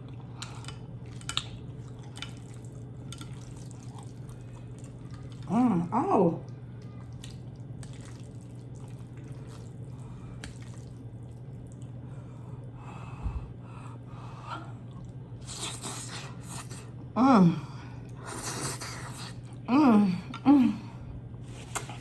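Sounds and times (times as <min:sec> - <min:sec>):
chewing and mouth clicks: 0:00.0 - 0:05.5, 0:06.7 - 0:12.6.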